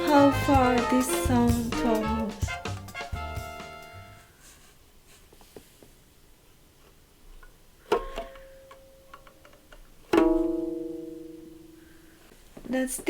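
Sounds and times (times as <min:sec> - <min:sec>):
plucked string notes: 0:00.0 - 0:03.6, 0:07.9 - 0:09.4, 0:10.0 - 0:12.2.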